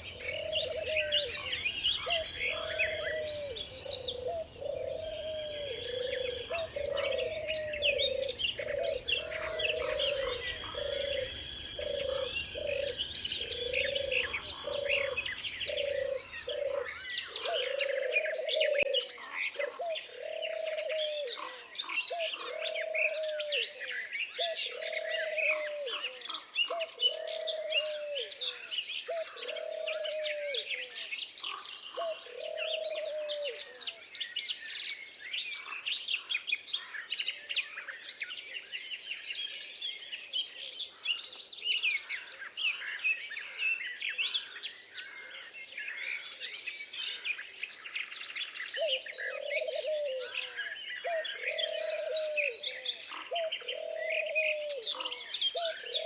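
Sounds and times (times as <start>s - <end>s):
low bird call: 0.0s - 34.0s, 48.2s - 56.0s
birds chirping and singing: 0.0s - 56.0s.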